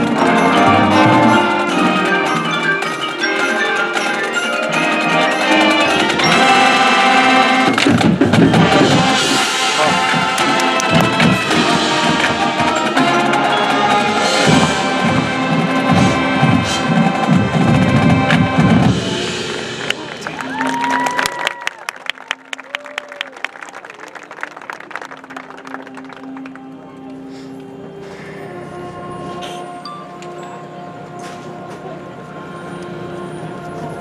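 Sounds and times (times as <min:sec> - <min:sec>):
marching band playing: 0:00.0 - 0:21.0
drums and percussion strikes: 0:00.0 - 0:21.2.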